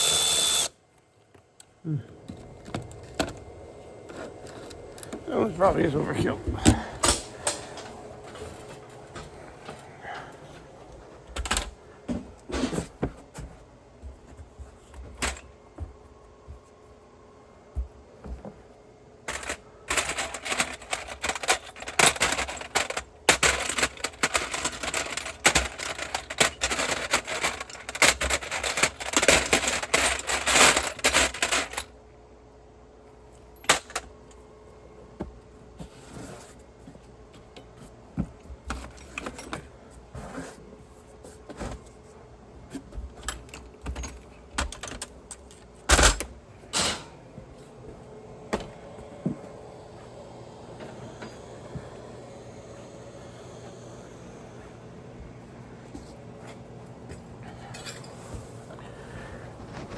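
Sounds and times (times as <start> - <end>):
metal tools clicking and rattling: 19.3 - 31.9.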